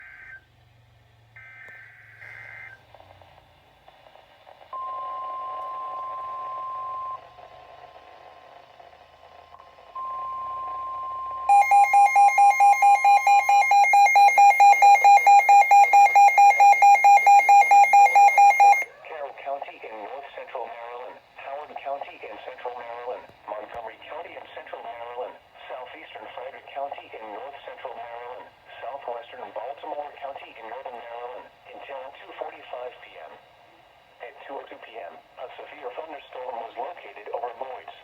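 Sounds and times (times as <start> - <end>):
high data-burst tones: 11.5 - 18.9
rapid loud beeping: 11.5 - 18.9
steady alert tone: 11.5 - 18.9.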